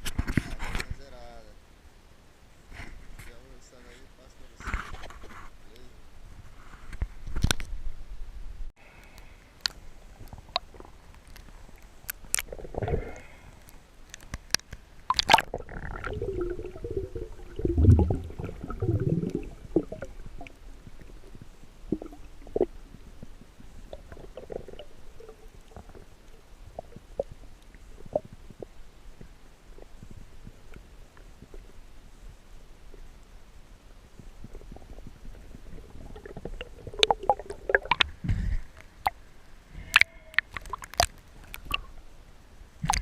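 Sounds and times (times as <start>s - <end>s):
underwater sloshing and gurgling: 9.6s - 42.2s.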